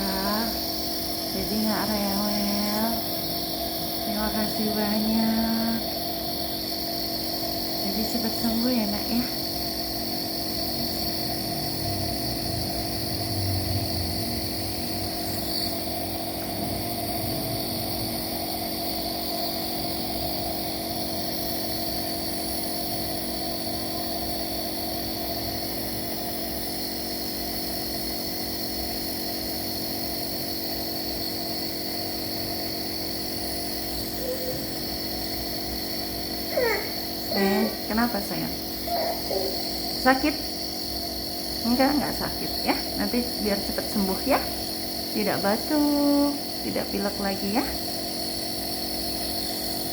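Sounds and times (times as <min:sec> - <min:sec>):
nebulizer compressor humming: 0:00.0 - 0:49.9.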